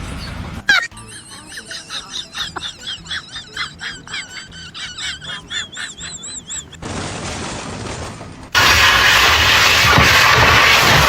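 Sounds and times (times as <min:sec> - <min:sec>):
high-pitched chirping calls: 0:00.0 - 0:06.8
steady hiss: 0:08.6 - 0:11.0.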